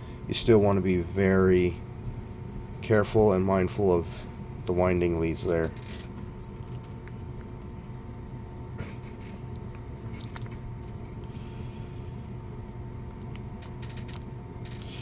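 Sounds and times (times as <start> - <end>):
steady low background hum: 0.0 - 15.0
small clicks and ticks: 13.1 - 14.9.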